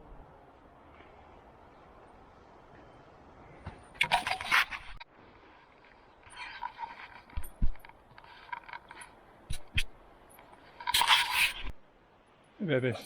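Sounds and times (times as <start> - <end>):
scraping and rattling of parts: 6.2 - 9.2.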